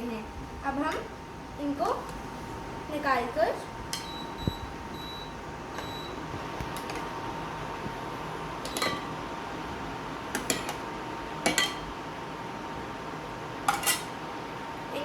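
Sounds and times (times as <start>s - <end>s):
faint steady hum: 0.0s - 15.0s
metal utensil clinking on pot: 13.7s - 14.1s.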